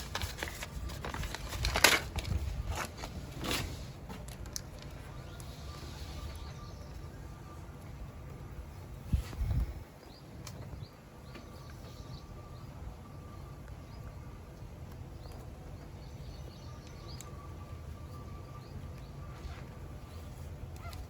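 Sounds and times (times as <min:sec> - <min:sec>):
low background noise: 0:00.0 - 0:21.0
faint bird chirps: 0:04.9 - 0:08.1.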